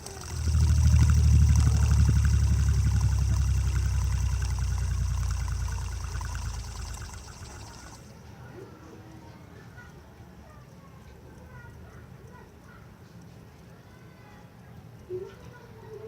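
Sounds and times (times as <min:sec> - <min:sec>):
fidget spinner whirring: 0:00.0 - 0:08.7.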